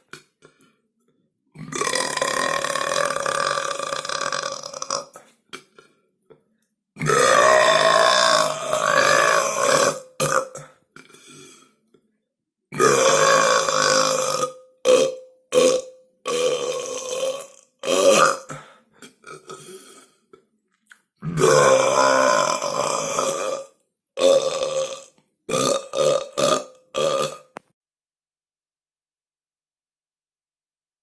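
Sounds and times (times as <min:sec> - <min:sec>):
person burping: 0:01.6 - 0:06.0, 0:07.0 - 0:11.6, 0:12.7 - 0:20.4, 0:21.2 - 0:27.6.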